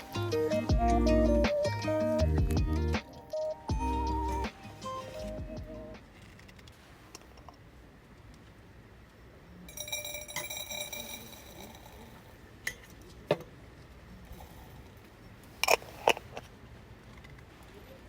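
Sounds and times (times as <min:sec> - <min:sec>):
tableware ringing clink: 0:09.7 - 0:12.0.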